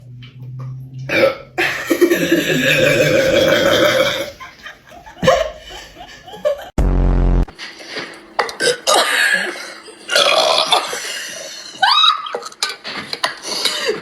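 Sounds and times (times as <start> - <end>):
person burping loudly: 1.1 - 4.4, 8.5 - 11.2
sudden loud low sound: 6.8 - 7.5.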